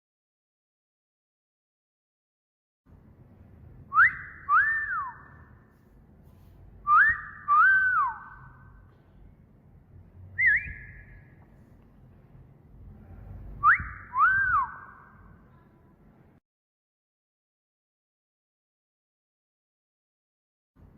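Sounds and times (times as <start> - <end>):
short rising whistle: 3.9 - 5.6, 6.8 - 8.7, 10.4 - 11.2, 13.6 - 15.1
wolf whistle: 3.9 - 5.6, 6.8 - 8.7, 10.4 - 11.3, 13.6 - 15.2.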